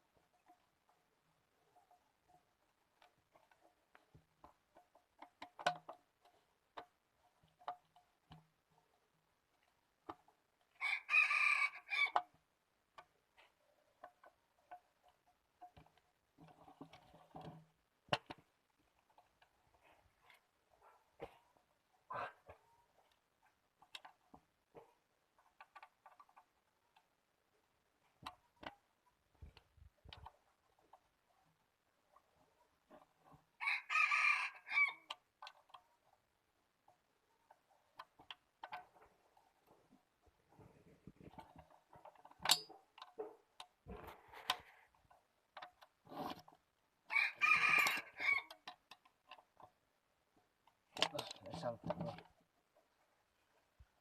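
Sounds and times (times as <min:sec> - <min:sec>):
rooster crowing: 0:10.8 - 0:12.2, 0:33.6 - 0:35.1, 0:47.1 - 0:48.5.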